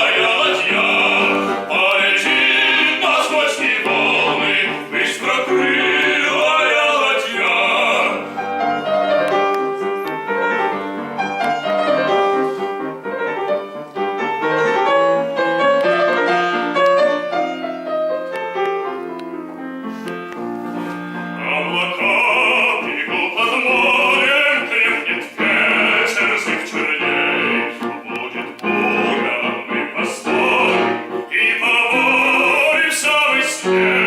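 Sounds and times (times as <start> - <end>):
operatic male voice singing: 0.0 - 8.3, 21.4 - 34.0
piano playing: 0.0 - 34.0.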